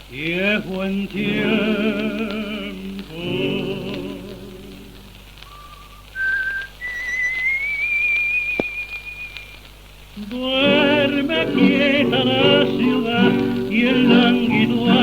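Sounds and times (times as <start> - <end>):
man singing with vibrato: 0.0 - 5.2, 10.2 - 15.0
record surface hiss: 0.0 - 15.0
person whistling: 5.5 - 9.6.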